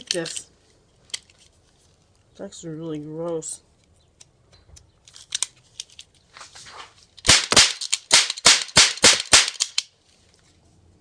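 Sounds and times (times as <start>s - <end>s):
sharp loud bangs: 7.3s - 9.7s.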